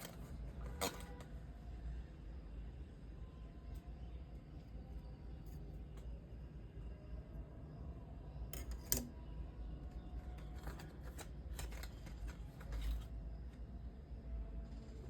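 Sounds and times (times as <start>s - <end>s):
clicks and rustles of packaging: 10.0s - 13.2s.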